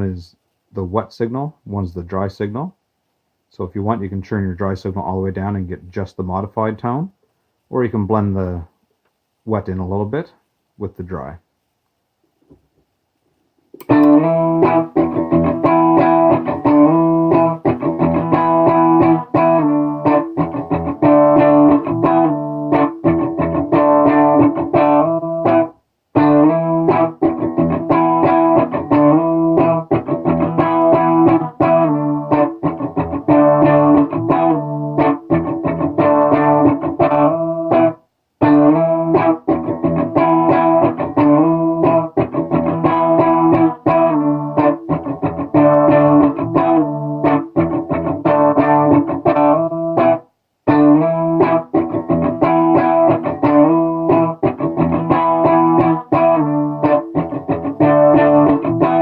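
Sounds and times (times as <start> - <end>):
electric guitar picked phrase: 13.9 - 59.0.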